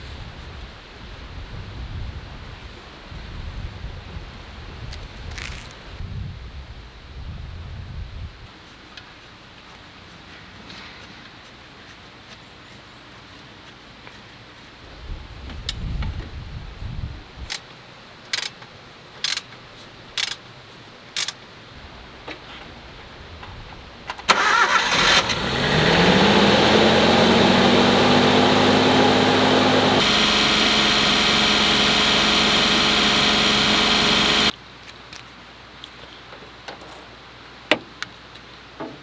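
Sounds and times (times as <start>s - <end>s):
sharp clicks: 18.3s - 18.6s, 20.2s - 20.4s, 21.2s - 21.4s
engine cranking and idling: 24.3s - 34.5s.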